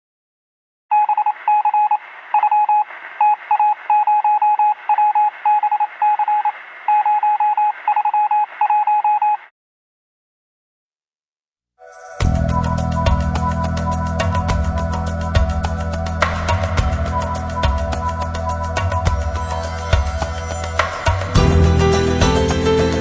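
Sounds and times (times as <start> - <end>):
morse code beeping: 0.9 - 9.5, 16.9 - 19.6.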